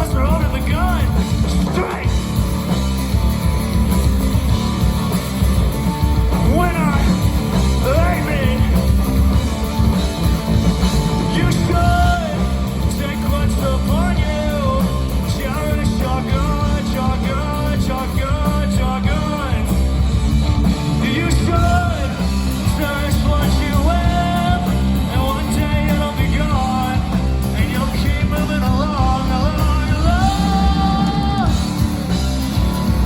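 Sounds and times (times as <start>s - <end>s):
heavy steady bass: 0.0s - 33.0s
rock music with singing: 0.0s - 33.0s.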